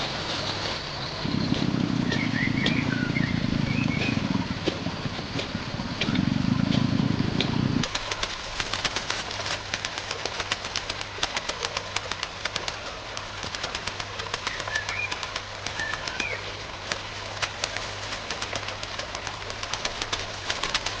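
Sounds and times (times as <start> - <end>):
sharp clicks and ticks: 1.4 - 17.0.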